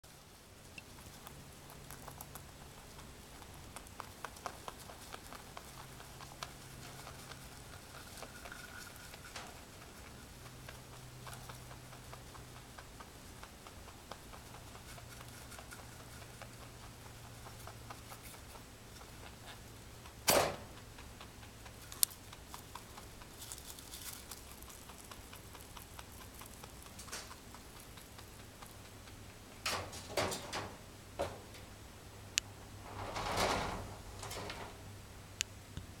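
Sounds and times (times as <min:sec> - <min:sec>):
faint rustling and scratching: 0:00.1 - 0:31.7, 0:32.6 - 0:34.9.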